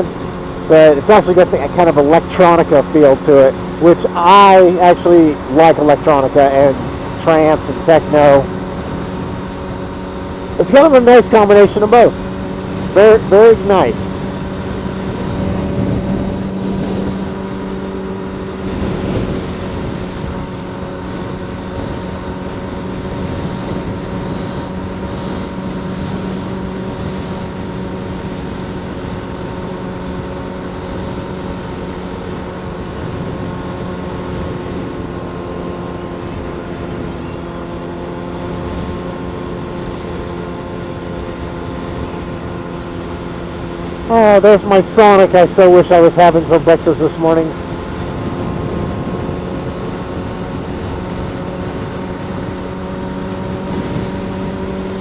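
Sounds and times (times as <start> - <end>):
motorcycle engine cruising: 0.0 - 55.0
wind and road noise: 0.0 - 55.0.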